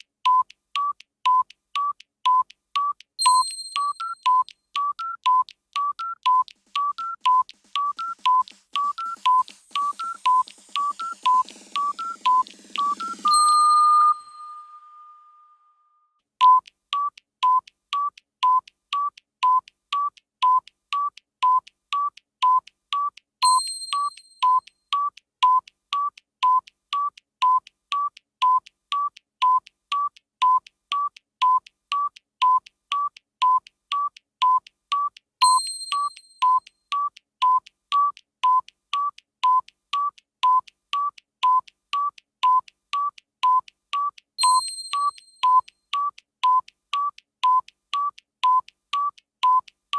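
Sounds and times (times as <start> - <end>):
electronic ticking beeps: 0.0 - 15.1, 16.4 - 49.8
bright bell-like chime: 3.2 - 4.2, 13.2 - 15.5, 23.4 - 24.6, 35.4 - 36.6, 44.4 - 45.6.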